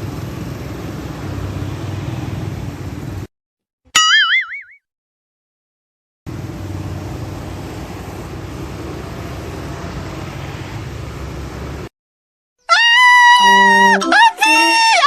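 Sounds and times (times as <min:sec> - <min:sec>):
vehicle engine and road drone: 0:00.0 - 0:03.3, 0:06.3 - 0:11.9.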